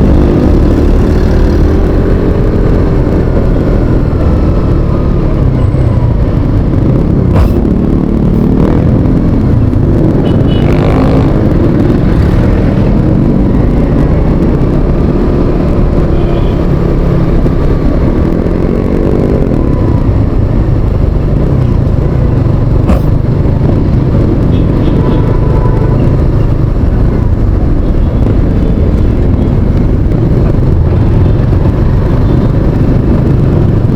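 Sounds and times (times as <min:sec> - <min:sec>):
motorcycle engine: 0:00.0 - 0:33.9
traffic noise: 0:00.0 - 0:33.9
wind rumble on microphone: 0:00.0 - 0:33.9.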